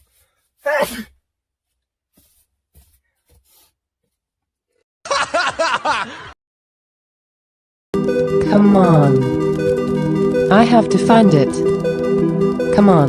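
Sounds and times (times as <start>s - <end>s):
person laughing: 5.1s - 6.3s.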